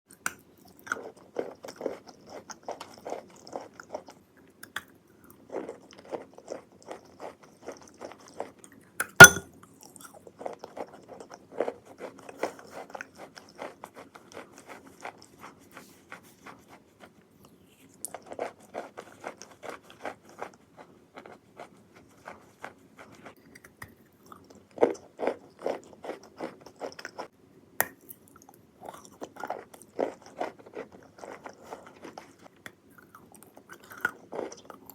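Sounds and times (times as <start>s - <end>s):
chewing wet clay crunches: 0.1s - 16.8s, 18.0s - 34.9s.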